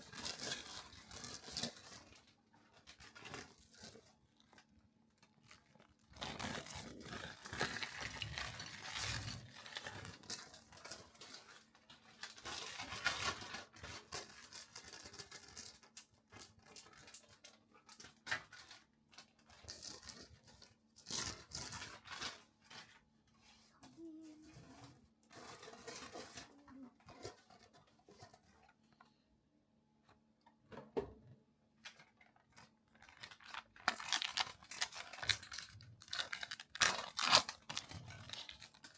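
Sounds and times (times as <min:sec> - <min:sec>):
packaging crinkling: 0:00.0 - 0:23.0, 0:31.8 - 0:38.9.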